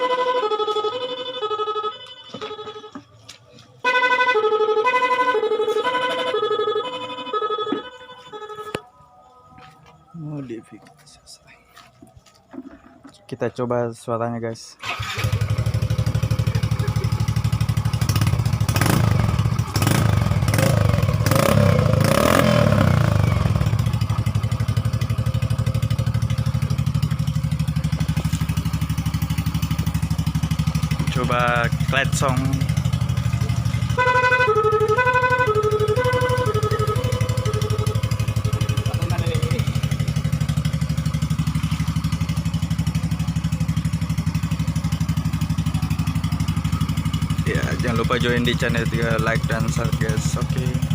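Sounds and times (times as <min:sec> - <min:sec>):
scooter engine idling: 0:14.8 - 0:50.9.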